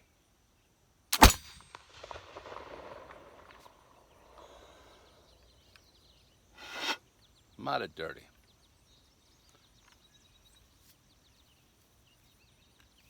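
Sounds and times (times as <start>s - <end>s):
pistol shot crack: 1.1s - 5.2s.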